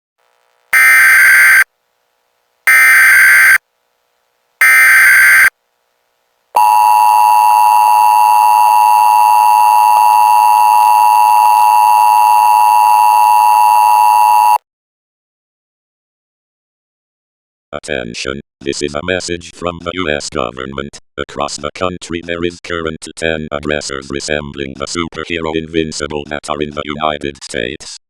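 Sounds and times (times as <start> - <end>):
digital data bursts: 0.8 - 1.6, 2.7 - 3.6, 4.6 - 5.5
two-tone alert signal: 0.8 - 1.6, 2.7 - 3.6, 4.6 - 5.5.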